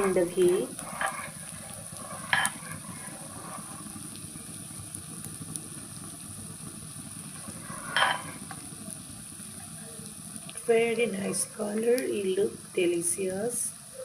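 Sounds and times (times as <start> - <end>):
food sizzling in a pan: 0.0 - 14.0
spoon striking a pan: 2.3 - 2.6, 7.9 - 8.4.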